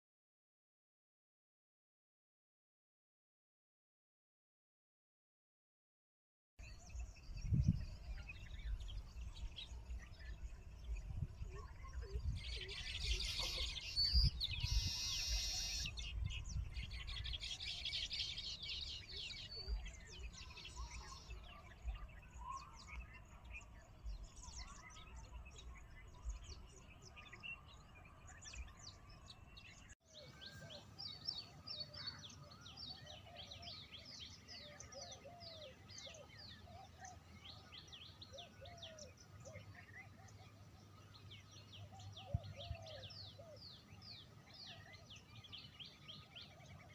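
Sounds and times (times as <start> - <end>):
birds calling and chirping: 6.6 - 46.9.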